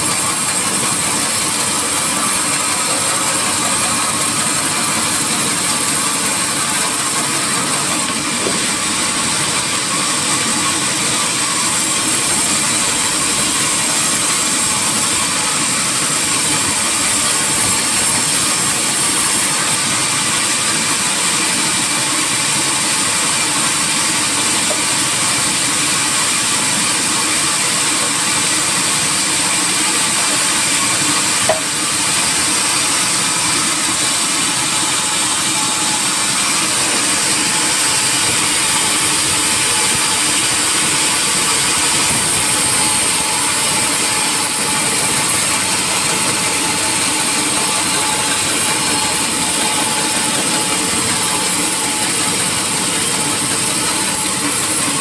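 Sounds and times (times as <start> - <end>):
sawmill machinery running: 0.0 - 55.0
thin high whine: 33.6 - 55.0.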